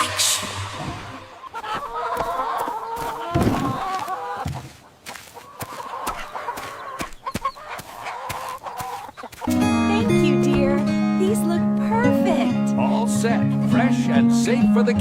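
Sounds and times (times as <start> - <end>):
hens clucking: 0.0 - 9.6.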